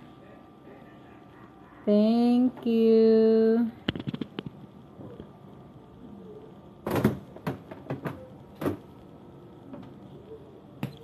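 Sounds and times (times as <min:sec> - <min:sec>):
items knocking on fridge shelves: 0:06.8 - 0:08.9.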